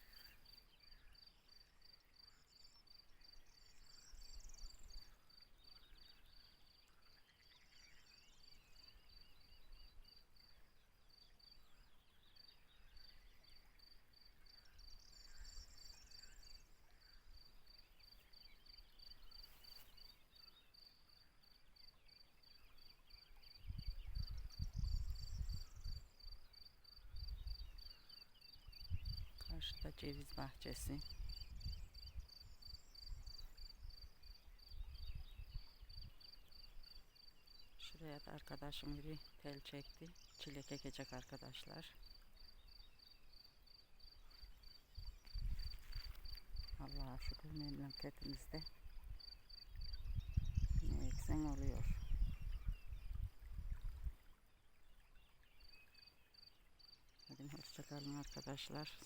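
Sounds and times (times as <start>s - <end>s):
cricket chirping: 12.3s - 29.6s, 30.3s - 37.7s, 38.6s - 51.8s, 55.6s - 58.6s
wind rumbling on microphone: 23.4s - 27.9s, 28.6s - 36.4s, 44.5s - 54.4s.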